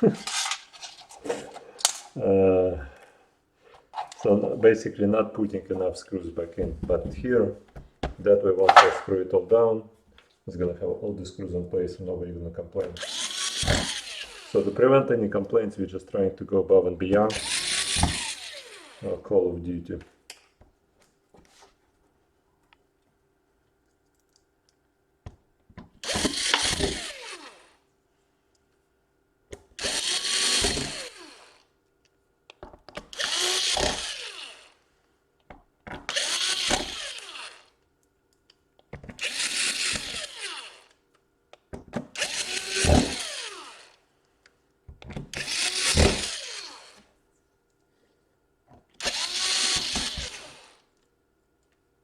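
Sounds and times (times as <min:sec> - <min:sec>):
electric screwdriver motor: 0:00.2 - 0:01.0, 0:13.0 - 0:14.8, 0:17.3 - 0:19.1, 0:26.0 - 0:27.8, 0:29.8 - 0:31.7, 0:33.1 - 0:34.8, 0:36.1 - 0:37.7, 0:39.2 - 0:41.0, 0:42.1 - 0:44.0, 0:45.3 - 0:47.1, 0:49.0 - 0:50.9.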